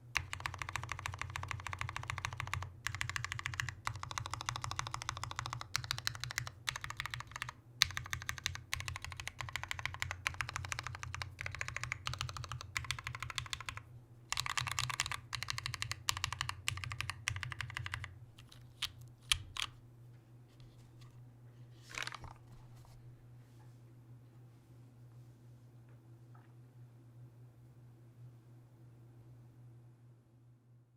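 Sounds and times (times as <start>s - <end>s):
mechanical keyboard clacking: 0.2s - 19.7s.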